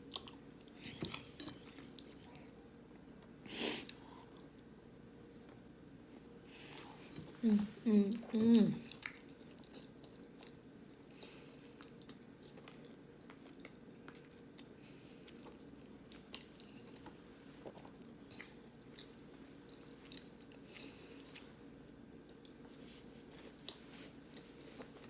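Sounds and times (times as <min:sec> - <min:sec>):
faint chewing: 0:00.0 - 0:04.7, 0:06.6 - 0:25.0
low steady hum: 0:00.0 - 0:25.0.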